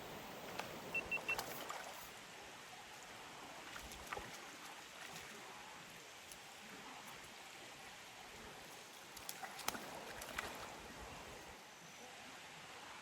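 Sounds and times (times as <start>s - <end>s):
short high peeps: 0.0s - 1.5s.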